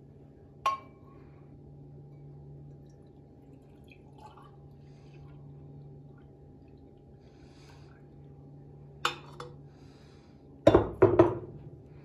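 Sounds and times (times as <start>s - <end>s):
steady low hum: 0.0s - 12.0s
liquid dripping: 2.5s - 8.4s.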